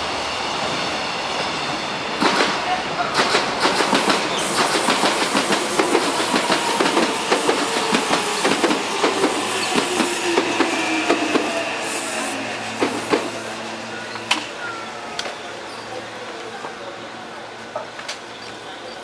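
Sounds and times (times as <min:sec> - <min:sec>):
train wheels clattering over rail joints: 0:02.2 - 0:11.4.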